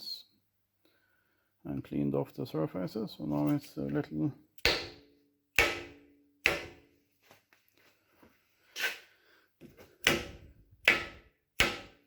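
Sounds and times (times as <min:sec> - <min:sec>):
sharp knocks on metal: 0:04.6 - 0:06.9, 0:10.0 - 0:12.0.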